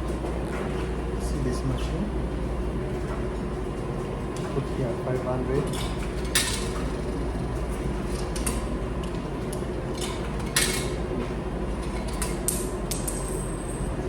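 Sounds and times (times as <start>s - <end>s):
machine hum: 12.7s - 14.0s.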